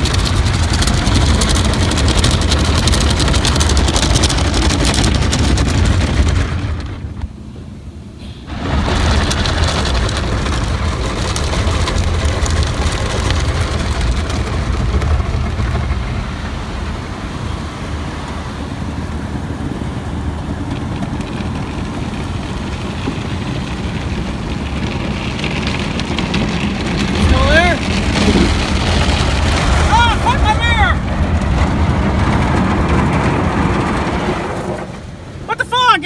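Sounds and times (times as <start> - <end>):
car wash machinery rumbling: 0.0 - 36.0.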